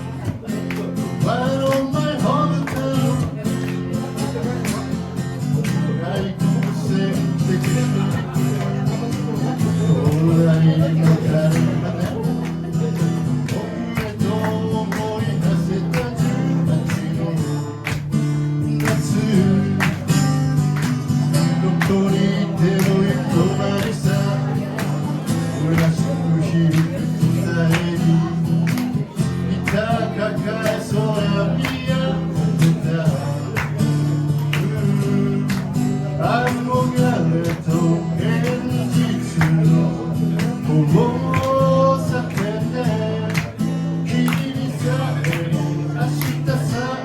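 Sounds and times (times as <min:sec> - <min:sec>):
acoustic guitar strumming chords: 0:00.0 - 0:47.0.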